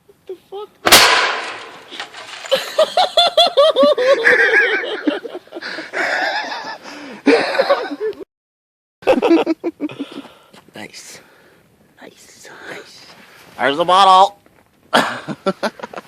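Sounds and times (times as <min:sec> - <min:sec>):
people laughing hard: 0:02.5 - 0:08.2.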